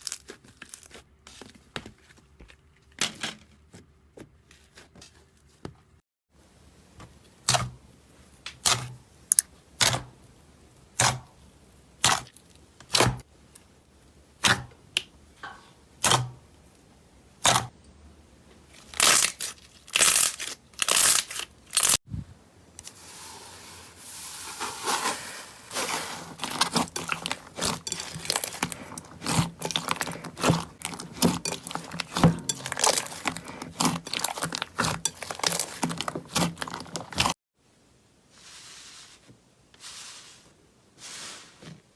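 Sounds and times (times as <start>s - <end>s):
slime crackling and squishing: 0.0s - 2.7s, 18.7s - 22.0s, 24.6s - 37.4s.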